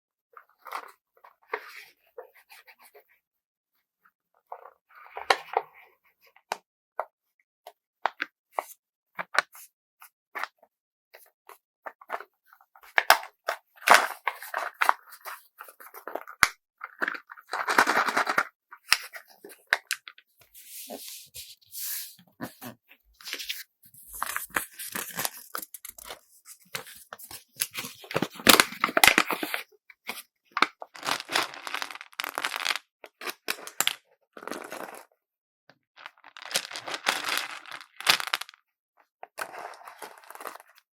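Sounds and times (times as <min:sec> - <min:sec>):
paper or plastic crinkling: 0:23.2 - 0:29.6.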